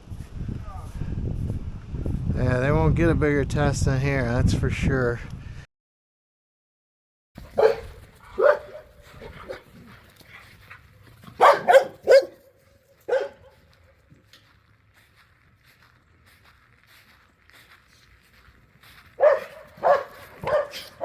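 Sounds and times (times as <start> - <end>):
dog barking: 7.5 - 9.7, 11.4 - 13.6, 19.2 - 21.0.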